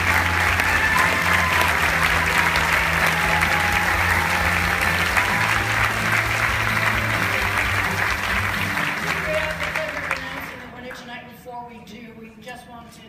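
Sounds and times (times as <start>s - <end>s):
stage music: 0.0s - 10.9s
audience applauding: 0.0s - 11.0s.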